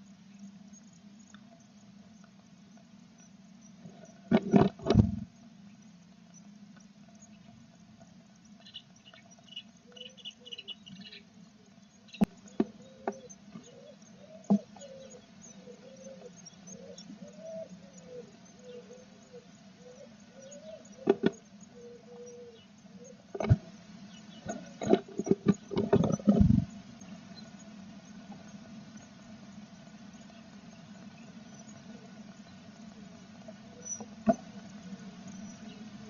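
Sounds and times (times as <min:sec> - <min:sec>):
steady low hum: 0:00.0 - 0:36.0
nestlings begging chirps: 0:08.4 - 0:36.0.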